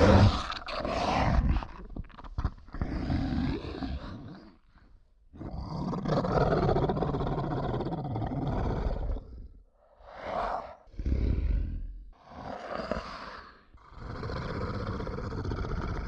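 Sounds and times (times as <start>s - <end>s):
animal roars: 0.0s - 1.7s, 5.4s - 16.0s.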